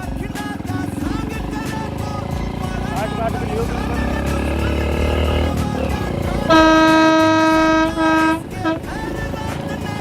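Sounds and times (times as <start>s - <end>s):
vehicle horn blast: 6.4s - 9.0s.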